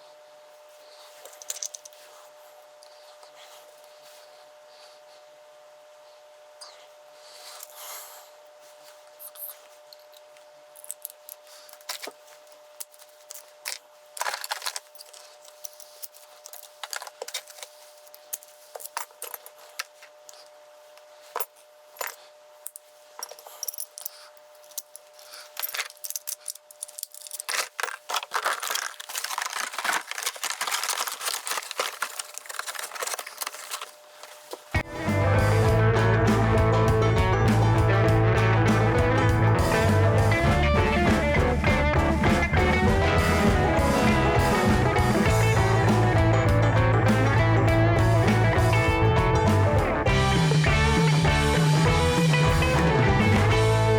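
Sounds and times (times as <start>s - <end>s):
faint steady hum: 0.0s - 38.5s
keys clicking and jangling: 23.2s - 33.9s.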